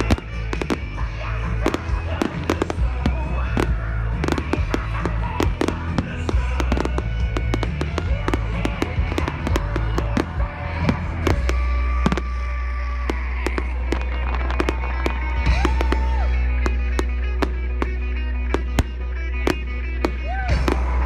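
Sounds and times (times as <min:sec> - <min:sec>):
fireworks bangs and crackles: 0:00.0 - 0:21.0
music with heavy bass: 0:00.0 - 0:21.0.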